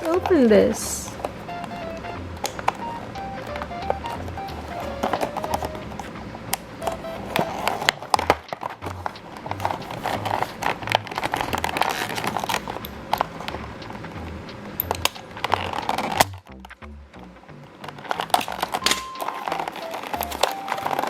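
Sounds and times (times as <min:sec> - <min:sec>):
music with bass beat: 0:01.5 - 0:11.8, 0:12.6 - 0:18.1
plastic packaging crinkling: 0:06.8 - 0:13.4, 0:15.2 - 0:16.4, 0:18.0 - 0:21.0.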